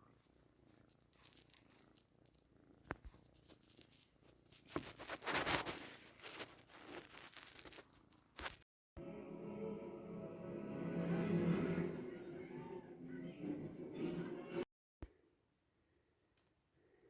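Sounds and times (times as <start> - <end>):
cat purring: 0.0 - 8.4
rustling: 0.0 - 8.6.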